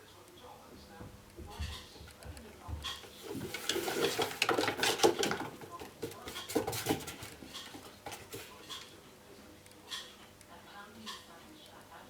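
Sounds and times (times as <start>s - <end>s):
cat wheel knocking and clattering: 1.4s - 8.9s.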